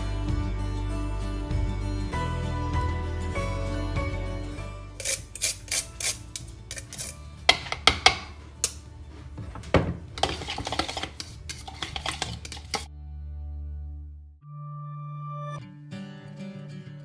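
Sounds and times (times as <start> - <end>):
soft background music: 0.0 - 16.6
utensils and dishes clinking: 5.0 - 12.9.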